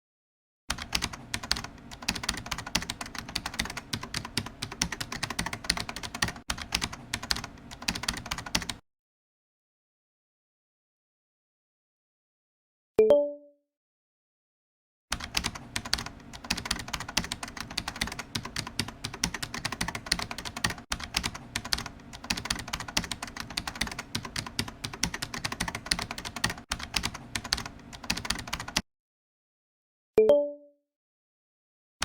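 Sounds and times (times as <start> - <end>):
keyboard typing clicks: 0.7 - 8.8, 15.1 - 28.8.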